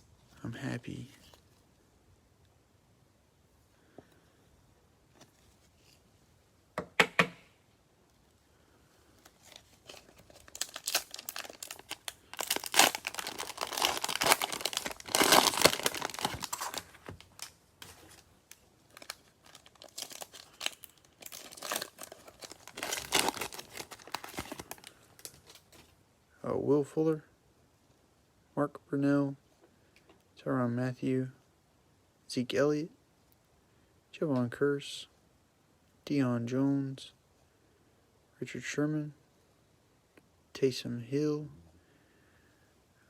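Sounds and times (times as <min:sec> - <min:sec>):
cellophane crinkling and tearing: 0:09.2 - 0:25.9.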